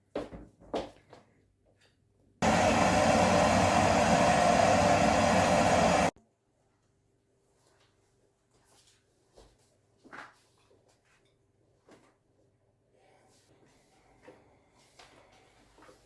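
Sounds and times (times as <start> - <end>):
vacuum cleaner running: 2.4 - 6.2.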